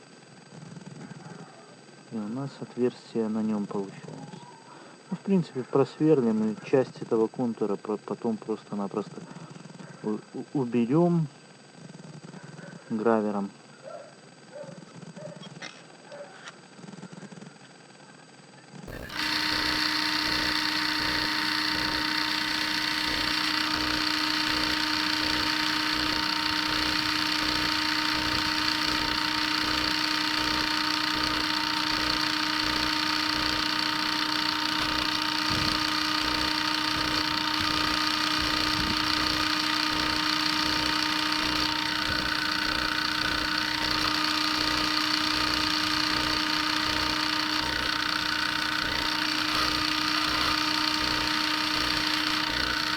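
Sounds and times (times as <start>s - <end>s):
rotary tool whining: 18.9s - 52.9s.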